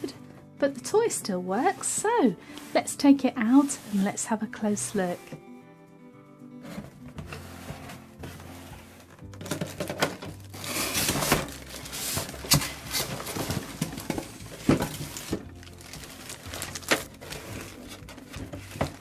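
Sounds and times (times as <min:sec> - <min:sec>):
plastic packaging crinkling: 0:09.0 - 0:19.0.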